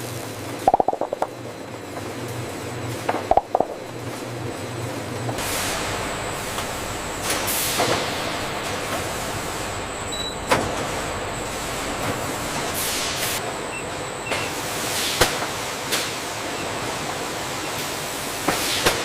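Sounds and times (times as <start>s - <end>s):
machinery noise: 0.0s - 13.7s.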